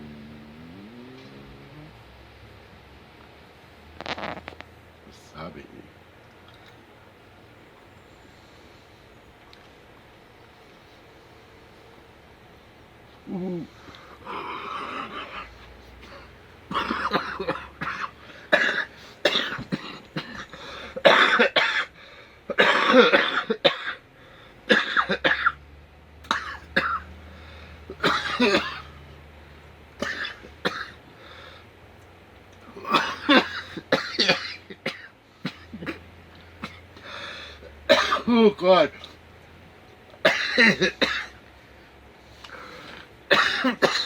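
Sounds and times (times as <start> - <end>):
man coughing: 14.3 - 21.9, 22.5 - 24.0, 24.7 - 25.5, 27.9 - 28.9, 30.0 - 31.0, 32.8 - 36.0, 37.9 - 38.6, 40.2 - 41.4, 43.3 - 44.0
man clearing his throat: 16.1 - 21.9, 22.6 - 24.0, 27.9 - 28.9, 32.8 - 36.0, 37.9 - 38.6, 40.3 - 41.4, 43.3 - 44.0.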